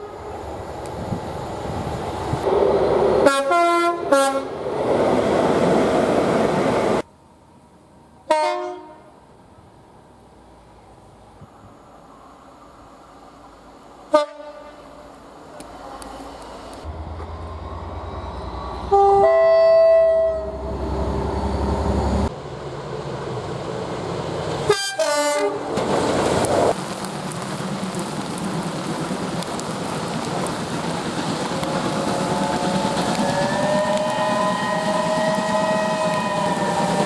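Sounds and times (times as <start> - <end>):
rumble of approaching train: 0.0 - 37.0
short train horn toots: 3.2 - 4.5, 8.3 - 9.1, 14.1 - 14.9, 18.8 - 20.7, 24.7 - 25.6, 33.3 - 37.0
train horn blasts: 3.2 - 4.5, 8.3 - 9.1, 14.1 - 14.9, 18.8 - 20.7, 24.7 - 25.6, 33.2 - 37.0.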